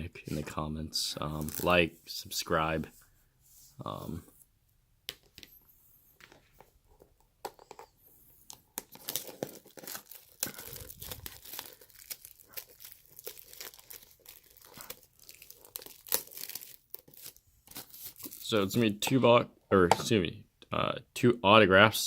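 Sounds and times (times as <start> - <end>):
plastic wrapping crinkling and tearing: 1.3 - 1.8, 8.4 - 18.8.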